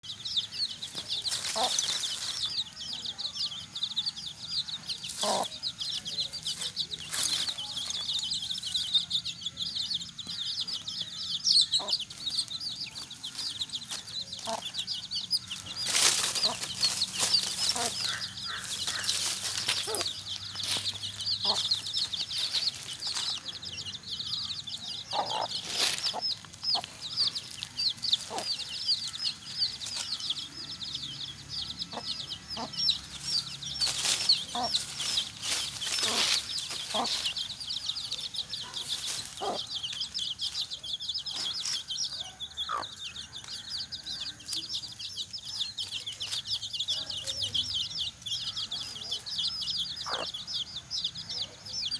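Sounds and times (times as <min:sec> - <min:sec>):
chickens clucking: 0:00.0 - 0:51.9
rapid high chirping: 0:10.6 - 0:30.6, 0:31.7 - 0:42.9.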